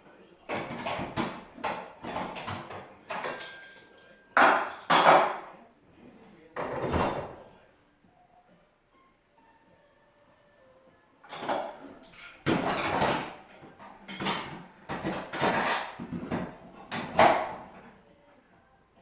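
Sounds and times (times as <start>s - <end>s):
metal clanks and knocks: 0.5s - 5.5s, 11.3s - 17.9s.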